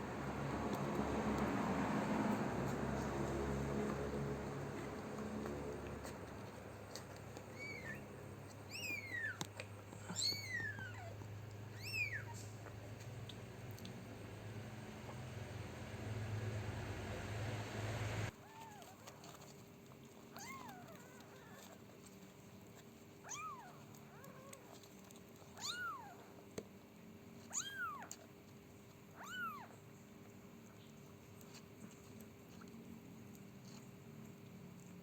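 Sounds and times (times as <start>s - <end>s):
cat mewing: 10.0s - 12.6s, 25.6s - 26.2s, 29.2s - 29.8s.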